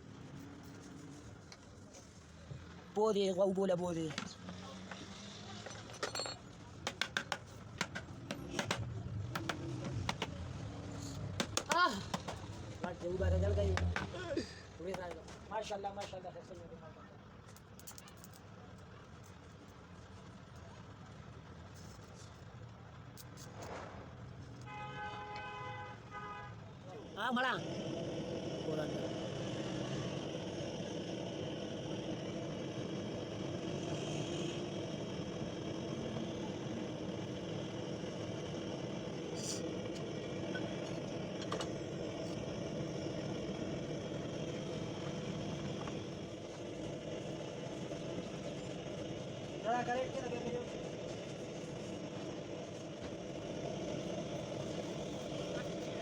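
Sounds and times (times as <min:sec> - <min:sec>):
steady mechanical drone: 0:00.0 - 0:17.0, 0:26.2 - 0:56.0
traffic rumble: 0:00.0 - 0:56.0
vehicle horn honking: 0:24.7 - 0:26.6.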